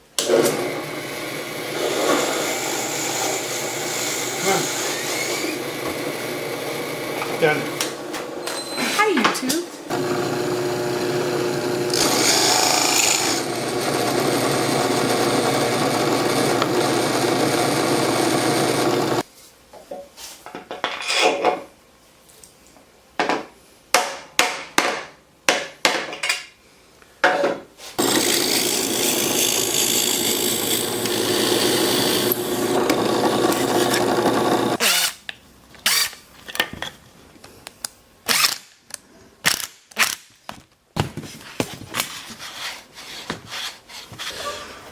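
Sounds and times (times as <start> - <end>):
power tool motor running: 0.3 - 8.5, 9.9 - 19.2, 28.0 - 35.0.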